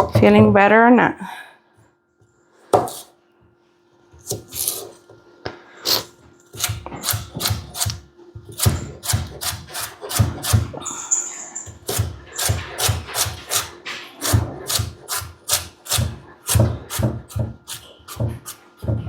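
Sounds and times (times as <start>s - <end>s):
knife scraping a vegetable: 2.8s - 3.2s, 4.2s - 5.0s, 5.8s - 18.8s.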